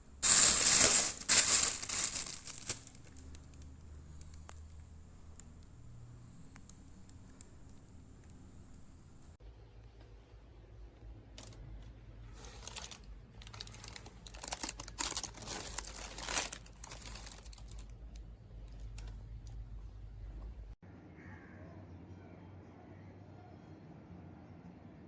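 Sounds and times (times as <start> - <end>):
low steady hum: 0.0 - 25.0
crinkling rustles: 0.2 - 4.9, 11.3 - 20.8.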